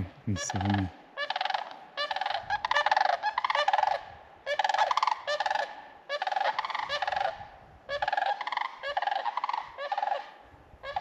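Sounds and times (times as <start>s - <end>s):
cranes rattling bugle calls: 0.0s - 11.0s.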